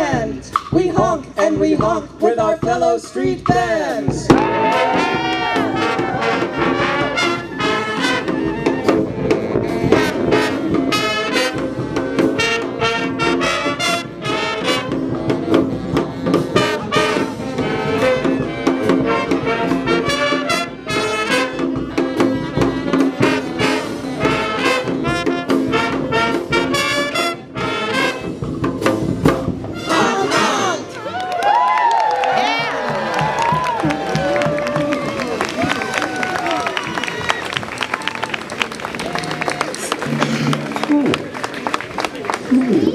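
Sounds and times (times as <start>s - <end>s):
drums keeping a beat: 0.0s - 31.0s, 32.0s - 42.9s
trumpets: 4.3s - 31.0s
trombones: 4.4s - 31.0s
saxophones: 4.8s - 28.5s.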